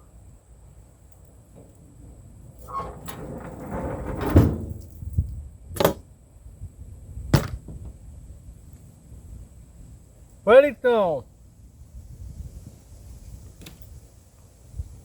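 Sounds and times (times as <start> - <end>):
sharp knocks: 7.4 - 7.9.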